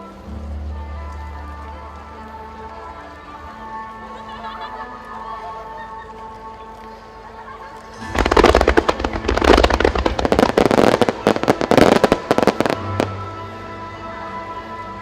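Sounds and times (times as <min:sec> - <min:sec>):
music: 0:00.0 - 0:15.0
fireworks bursting: 0:08.0 - 0:13.2.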